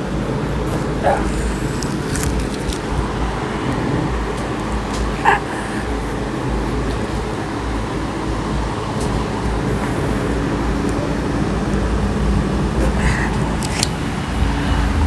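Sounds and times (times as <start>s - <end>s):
low rumble and hiss: 0.0s - 15.0s.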